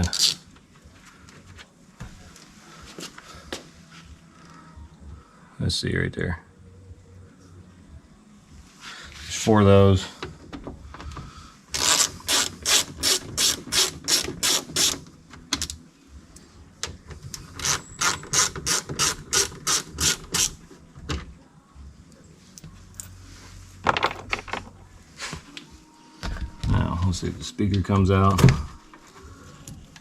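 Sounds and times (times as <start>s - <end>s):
hand ratchet clicking: 11.8s - 15.0s, 17.6s - 20.6s.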